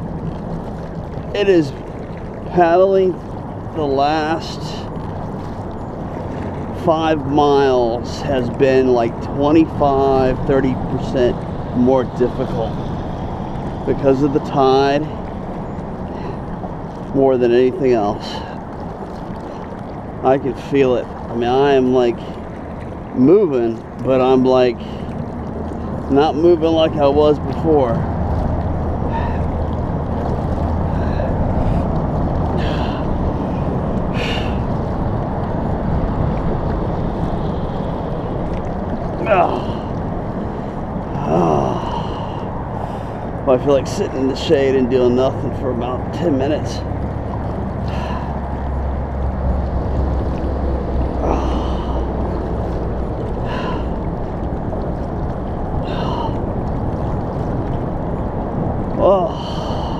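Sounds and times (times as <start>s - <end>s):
low rushing noise: 0.0s - 59.9s
paddle strokes splashing water: 0.0s - 59.9s.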